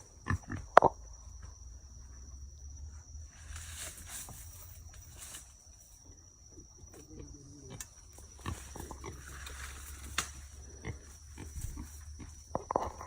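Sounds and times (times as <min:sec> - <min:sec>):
piglet grunting: 0:07.1 - 0:09.4
brush snapping and rustling: 0:07.7 - 0:10.7.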